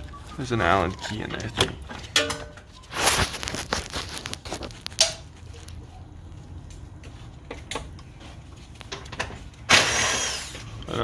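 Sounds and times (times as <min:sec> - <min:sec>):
hand tools clicking and scraping: 0:00.4 - 0:05.8.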